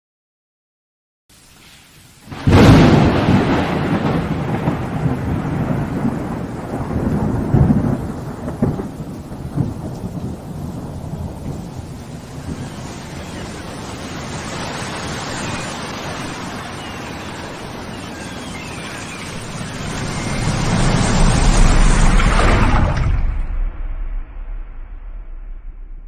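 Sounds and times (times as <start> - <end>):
rushing noise with low rumble: 6.4 - 26.0.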